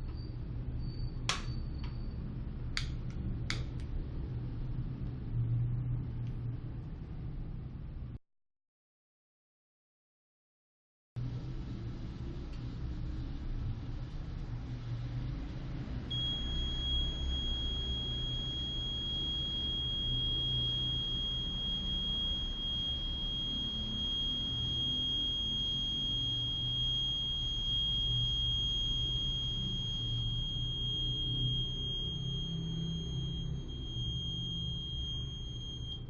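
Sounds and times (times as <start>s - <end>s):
high-pitched alarm tone: 16.1s - 36.0s.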